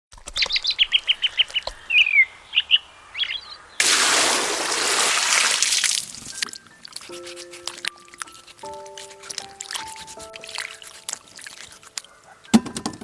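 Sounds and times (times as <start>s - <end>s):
birds chirping: 5.8s - 13.0s.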